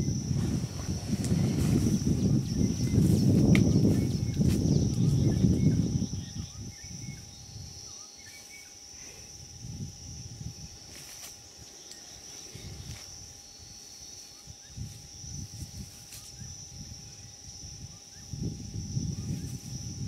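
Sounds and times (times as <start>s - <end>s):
insects droning: 0.0s - 20.0s
animal scuffling in sawdust: 0.4s - 5.6s, 10.8s - 11.6s, 14.2s - 16.5s.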